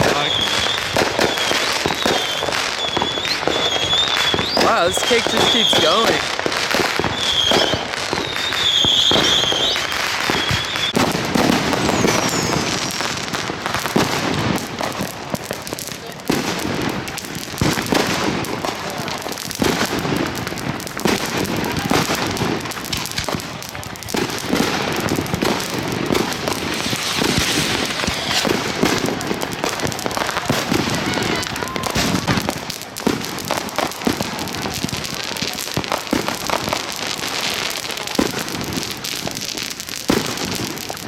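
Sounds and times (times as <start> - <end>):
high firework whistles: 0.0 - 16.9, 24.1 - 37.8
firework bangs and crackling: 0.0 - 41.0.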